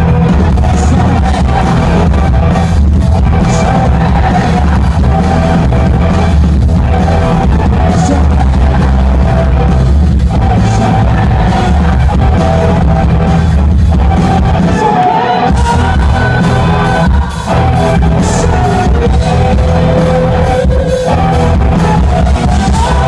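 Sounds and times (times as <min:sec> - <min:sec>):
person singing lead vocal: 0:00.0 - 0:23.0
rock band playing live: 0:00.0 - 0:23.0.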